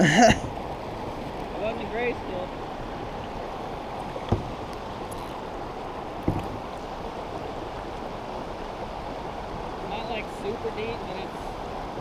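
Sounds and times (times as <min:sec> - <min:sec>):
creek water rushing: 0:00.0 - 0:12.0
dull knocks: 0:04.2 - 0:04.8, 0:06.2 - 0:06.7.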